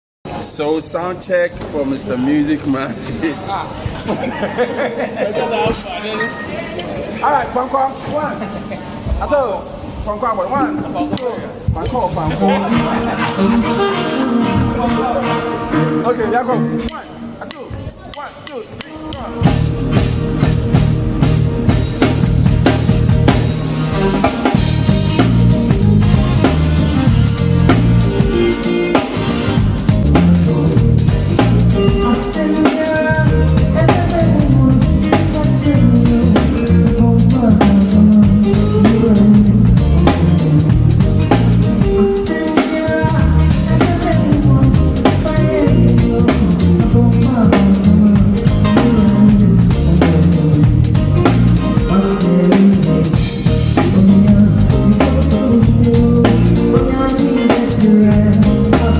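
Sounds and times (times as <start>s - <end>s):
live band playing: 1.2s - 58.9s
drum kit: 8.9s - 58.9s.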